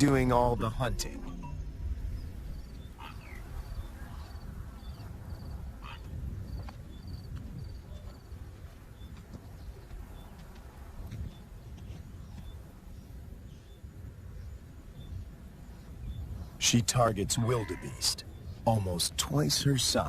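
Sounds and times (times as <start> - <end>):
low steady rumble: 0.0 - 5.2
falling bird calls: 0.0 - 7.2, 11.2 - 20.0
high bird or insect chirps: 0.0 - 8.4.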